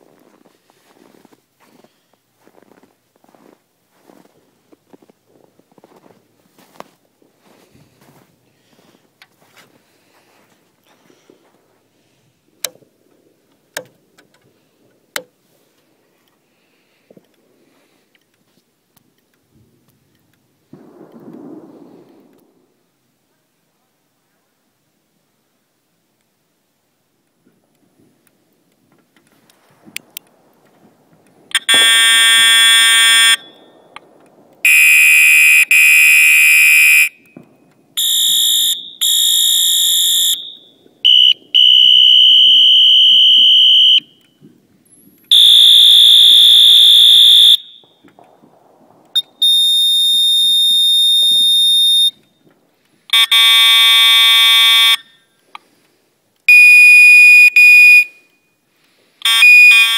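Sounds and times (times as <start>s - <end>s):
buzzing fire alarm horns: 31.5s - 33.7s, 34.7s - 37.4s, 38.0s - 44.4s, 45.3s - 48.0s, 53.1s - 55.1s, 56.5s - 58.3s, 59.2s - 59.9s
piercing high alarm tone: 31.5s - 33.7s, 34.7s - 37.4s, 38.0s - 44.2s, 45.3s - 48.0s, 59.3s - 59.9s.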